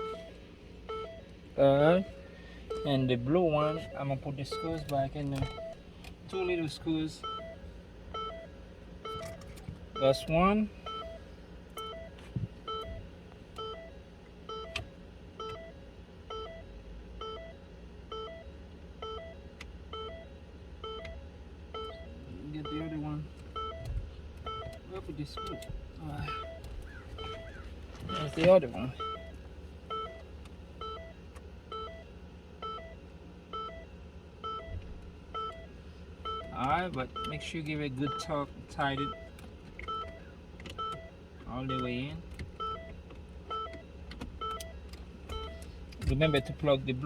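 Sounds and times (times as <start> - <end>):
low steady hum: 0.0 - 47.0
shifter clicks: 2.0 - 6.6, 9.0 - 11.1, 14.5 - 15.7, 22.6 - 32.0, 34.4 - 47.0.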